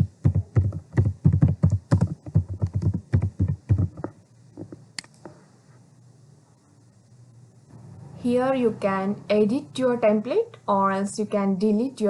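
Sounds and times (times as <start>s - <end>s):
typing on computer keyboard: 0.2s - 4.7s
sharp click: 5.0s - 5.3s.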